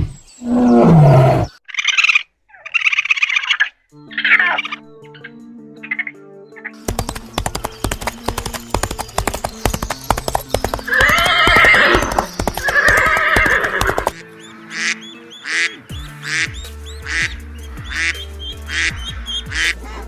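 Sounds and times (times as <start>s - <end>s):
background music: 3.8s - 20.0s
horse hooves beating fast: 6.8s - 14.2s
horse whinnying: 10.9s - 14.2s
duck quacking: 14.7s - 20.0s.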